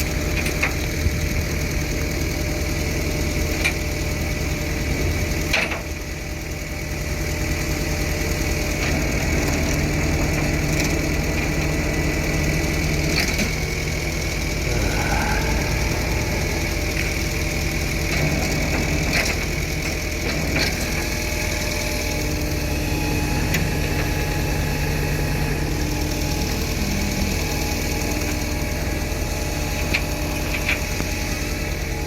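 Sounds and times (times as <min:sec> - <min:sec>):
vehicle engine running: 0:00.0 - 0:32.0.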